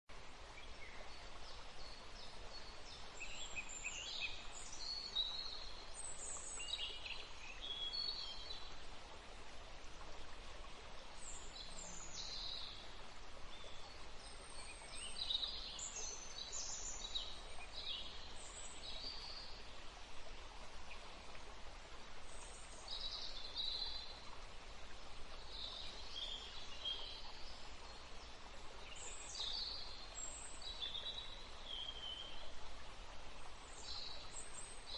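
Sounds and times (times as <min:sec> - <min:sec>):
steady background hiss: 0:00.1 - 0:34.9.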